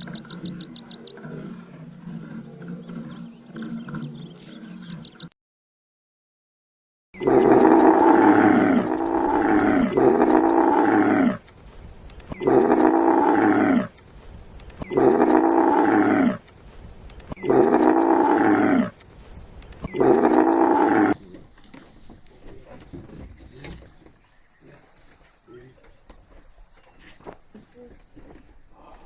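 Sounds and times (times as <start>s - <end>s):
animal drawn-out pitched call: 0.0s - 5.3s.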